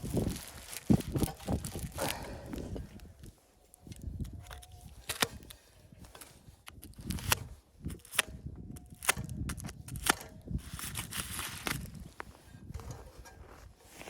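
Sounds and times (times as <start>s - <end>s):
sharp cracks and knocks: 6.1s - 10.4s.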